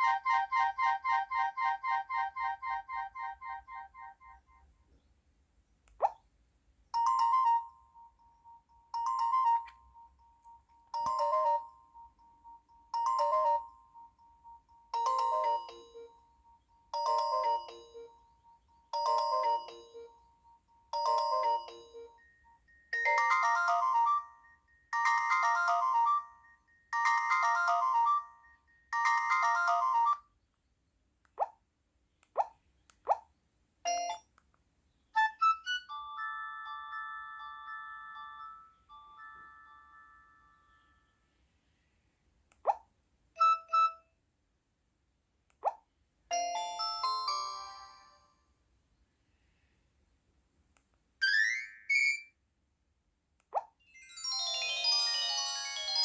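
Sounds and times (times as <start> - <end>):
phone ringtone melody: 0.0 - 4.7, 7.0 - 30.3, 33.9 - 34.3, 35.2 - 41.4, 43.4 - 44.0, 46.3 - 48.4, 54.0 - 56.0.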